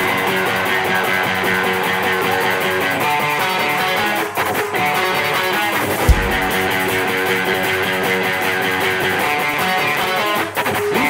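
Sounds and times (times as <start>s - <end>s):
deep bass hit: 6.1s - 6.9s.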